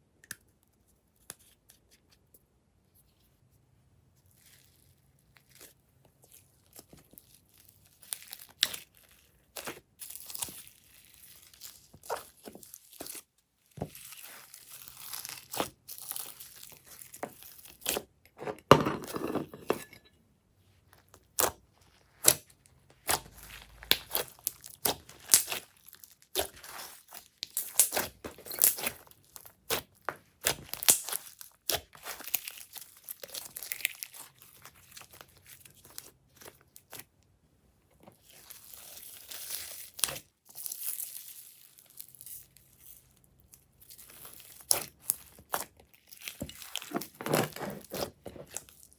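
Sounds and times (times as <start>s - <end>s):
slime squishing: 4.3s - 13.3s, 13.9s - 18.1s, 21.0s - 37.1s, 38.2s - 41.7s, 43.8s - 48.9s.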